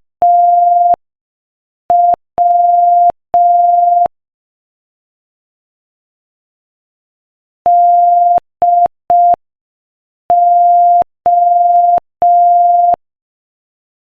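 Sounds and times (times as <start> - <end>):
morse code beeps: 0.2 - 1.0, 1.9 - 4.1, 10.3 - 13.0.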